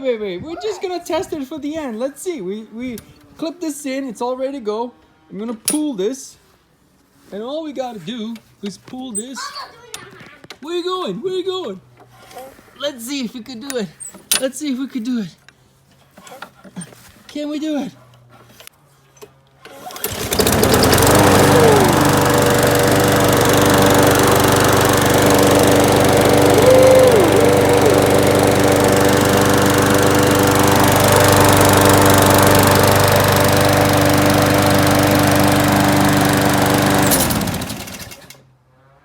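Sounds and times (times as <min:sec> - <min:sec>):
lawn mower engine running: 0:19.9 - 0:38.4.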